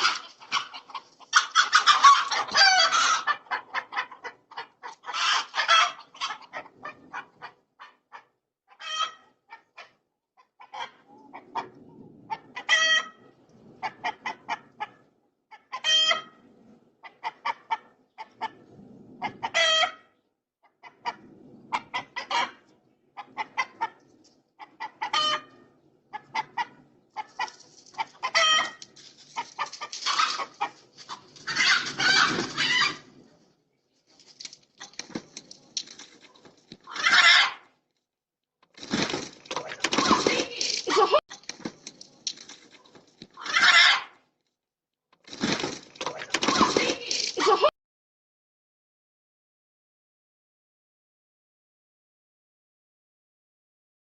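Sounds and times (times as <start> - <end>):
chickens clucking and squawking: 0.0 - 33.6, 36.1 - 37.7, 38.9 - 41.5, 42.7 - 44.2, 45.4 - 47.7.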